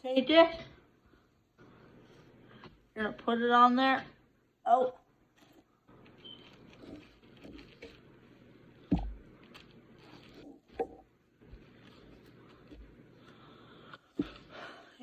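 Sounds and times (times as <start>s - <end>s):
spoon spreading peanut butter: 5.4s - 14.6s.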